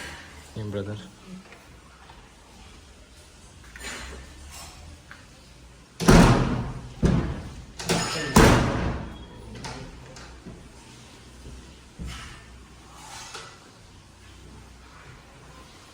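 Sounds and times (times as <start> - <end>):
door thudding shut: 6.0 - 7.5, 8.4 - 9.2.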